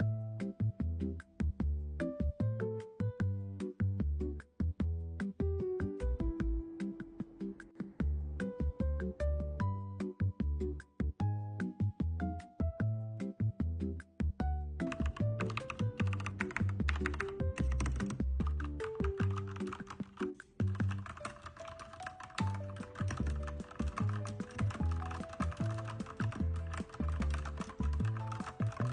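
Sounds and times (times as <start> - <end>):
background music with bass line: 0.0 - 21.0
mechanical keyboard typing: 14.8 - 28.9.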